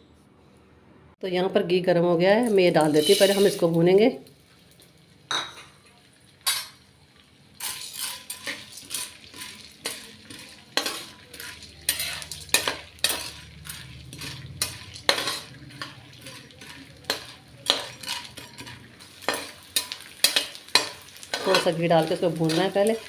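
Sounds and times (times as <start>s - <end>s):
light sizzle: 2.2s - 23.0s
ladle scraping a pan: 2.8s - 3.7s, 7.6s - 23.0s.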